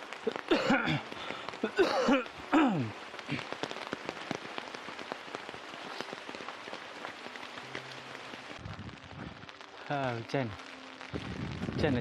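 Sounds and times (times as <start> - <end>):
heavy rain hiss: 0.0 - 12.0
raindrops ticking on umbrella: 0.0 - 12.0.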